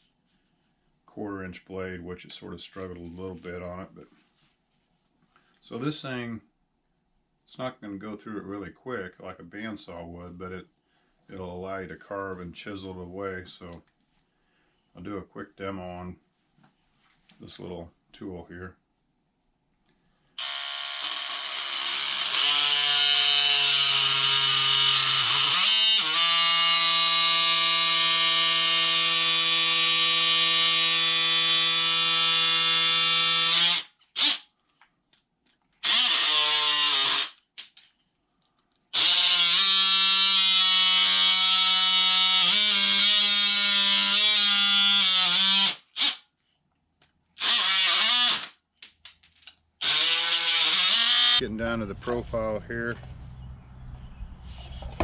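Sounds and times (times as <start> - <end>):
oscillating multi-tool cutting: 20.4 - 34.5, 35.8 - 37.4, 38.9 - 46.2, 47.4 - 48.6, 49.8 - 51.4.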